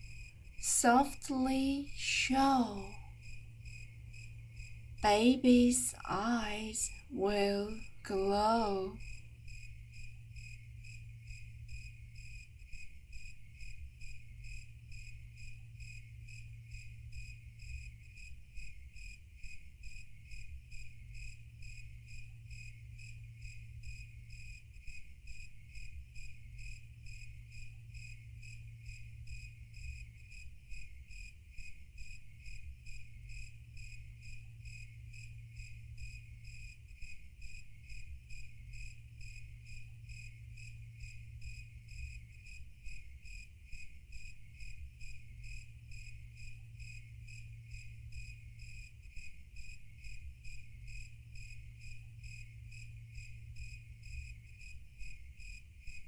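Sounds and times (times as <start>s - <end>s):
low steady hum: 0.0s - 9.0s
crickets chirping: 2.8s - 6.1s, 25.3s - 56.0s.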